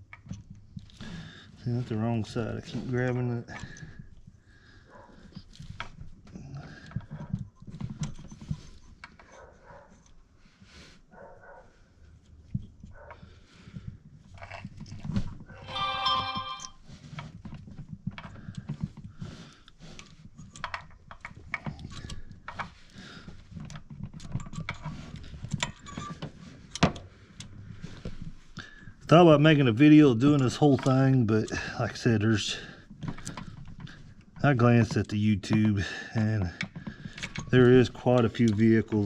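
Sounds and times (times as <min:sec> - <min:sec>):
high squeak: 0:15.6 - 0:16.8.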